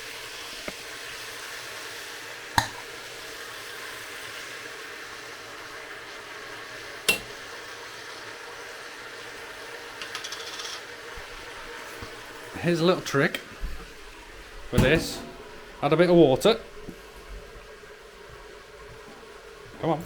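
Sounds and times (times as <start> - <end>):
sauce sizzling in pan: 0.0 - 20.0
clinks against pan: 2.6 - 2.8, 7.1 - 7.3, 14.8 - 15.6.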